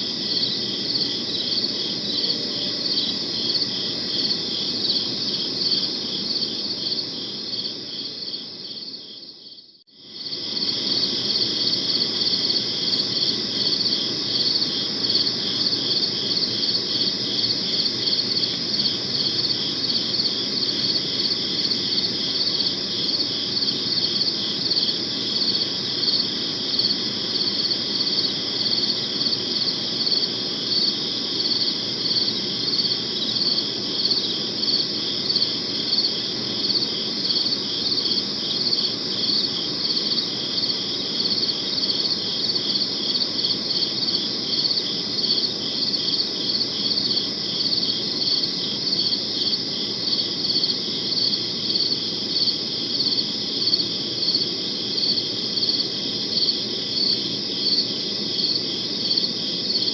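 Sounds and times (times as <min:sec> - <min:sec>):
crickets chirping: 0:00.0 - 0:59.9
low night ambience hum: 0:00.0 - 0:59.9.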